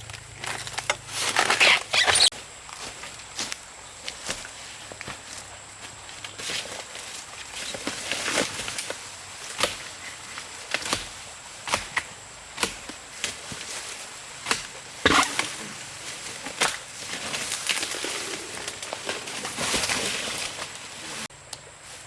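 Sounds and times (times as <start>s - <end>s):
blade chopping strikes: 14.5s - 15.6s.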